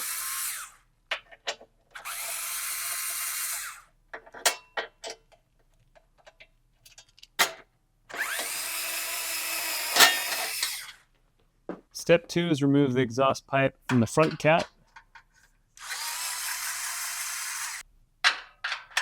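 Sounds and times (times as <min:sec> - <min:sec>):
cordless power tool spinning bolts: 0:00.0 - 0:00.8, 0:01.9 - 0:03.9, 0:08.1 - 0:11.0, 0:15.8 - 0:17.8.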